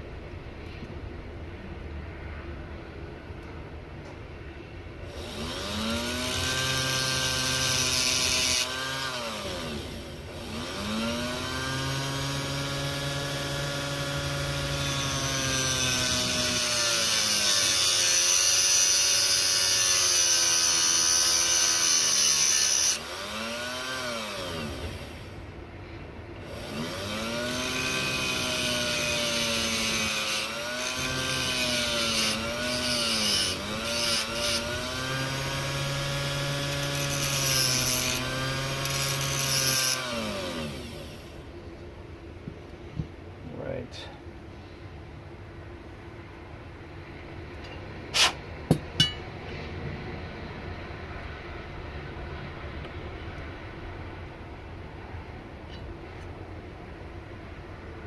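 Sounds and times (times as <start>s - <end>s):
rotary tool grinding: 5.2s - 9.7s, 10.4s - 24.7s, 26.5s - 40.8s, 47.6s - 49.2s.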